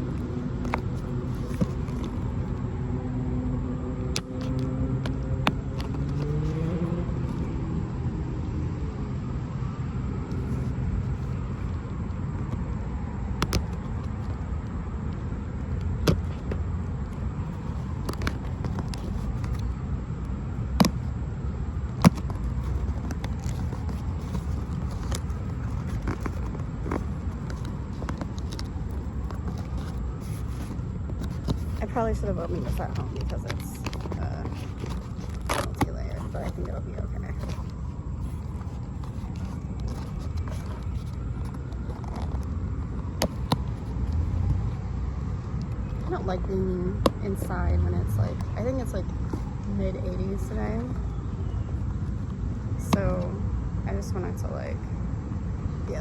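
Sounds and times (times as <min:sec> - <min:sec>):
motor vehicle engine rumble: 0:00.0 - 0:56.0
cardboard box being opened: 0:00.1 - 0:02.6, 0:21.9 - 0:42.5.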